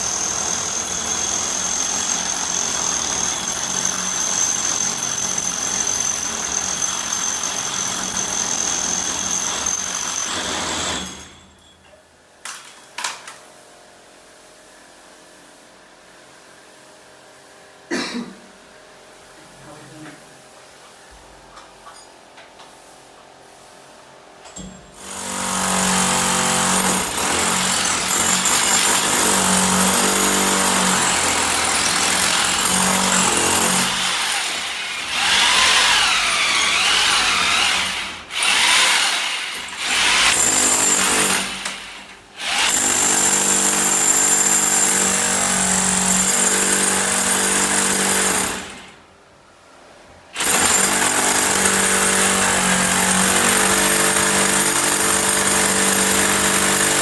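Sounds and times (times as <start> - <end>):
power drill drilling into wall: 0.0 - 11.4, 25.0 - 49.0, 50.4 - 57.0.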